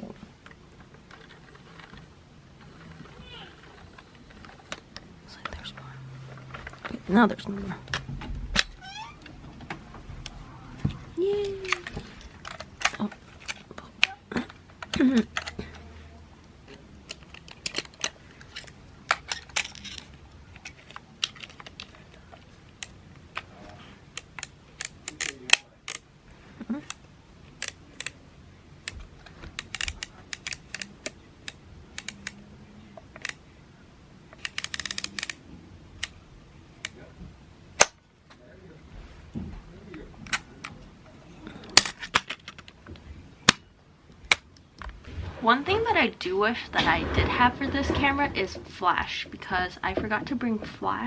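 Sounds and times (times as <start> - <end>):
light handling noises: 0.0 - 28.2.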